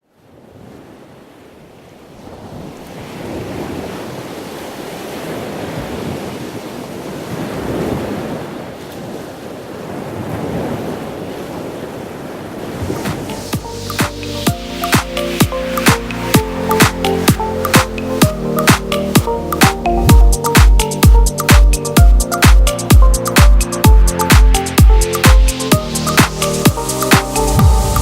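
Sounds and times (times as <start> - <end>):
sea waves washing in: 0.2 - 28.0
wind noise on microphone: 9.8 - 28.0.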